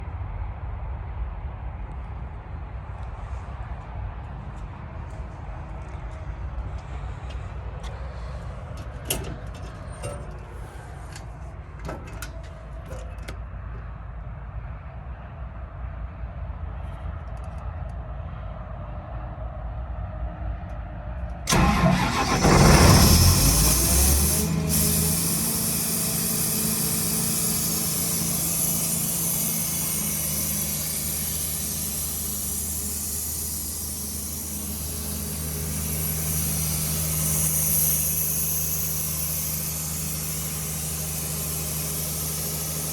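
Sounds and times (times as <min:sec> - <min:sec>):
diesel engine idling: 0:06.6 - 0:13.5, 0:21.5 - 0:42.9
diesel engine cranking and starting: 0:06.6 - 0:13.8, 0:21.5 - 0:42.9.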